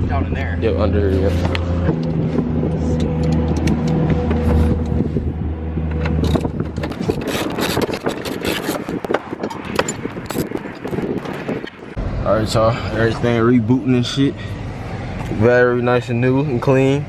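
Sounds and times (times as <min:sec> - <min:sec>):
clicks scrapes and knocks: 0:01.2 - 0:05.1, 0:05.8 - 0:11.8.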